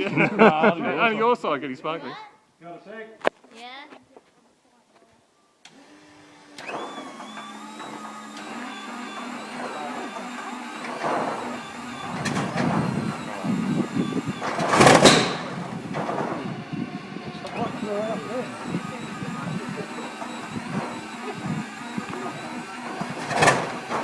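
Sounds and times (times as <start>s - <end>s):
whining engine starter: 5.7s - 24.0s
radial engine uneven bursts: 5.8s - 24.0s.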